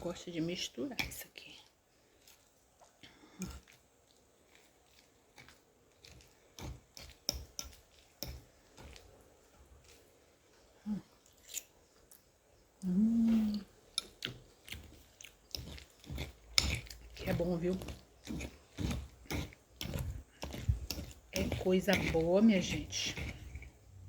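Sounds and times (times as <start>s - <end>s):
chewing: 2.1s - 10.2s, 13.3s - 23.8s.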